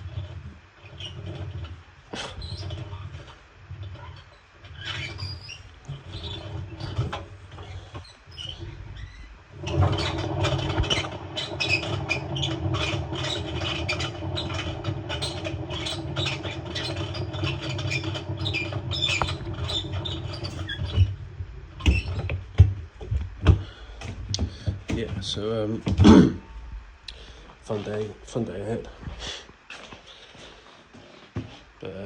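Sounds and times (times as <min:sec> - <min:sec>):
washing machine drum bearings grinding: 0:00.0 - 0:26.4.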